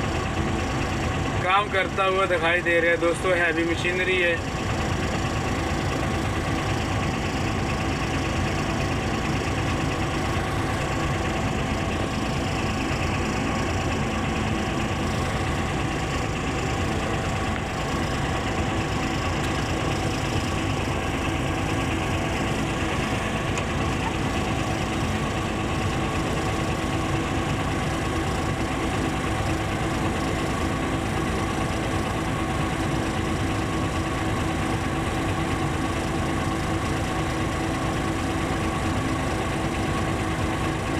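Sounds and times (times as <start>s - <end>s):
diesel excavator engine running: 0.0s - 40.9s.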